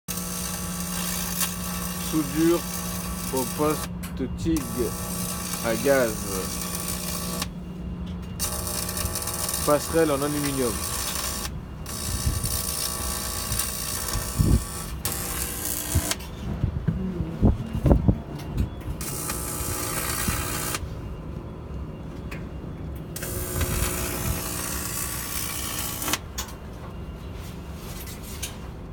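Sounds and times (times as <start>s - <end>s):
welding arc buzzing hiss: 0.1s - 3.9s, 4.6s - 7.5s, 8.4s - 16.2s, 19.0s - 20.8s, 23.2s - 26.2s.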